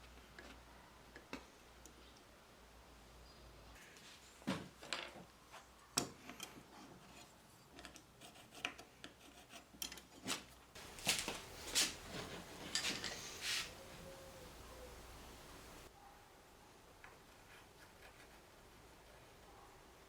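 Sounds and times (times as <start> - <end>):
scraping and rubbing strokes: 10.3 - 15.9.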